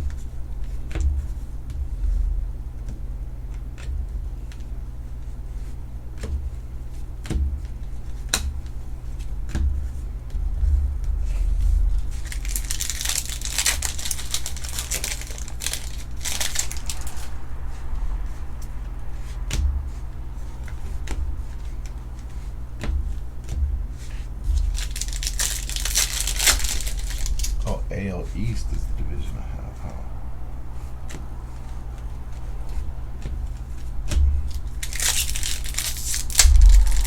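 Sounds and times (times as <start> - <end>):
steady low hum: 0.0 - 37.0
foil wrapper tearing and crinkling: 12.2 - 17.3, 24.5 - 27.6, 34.5 - 37.0.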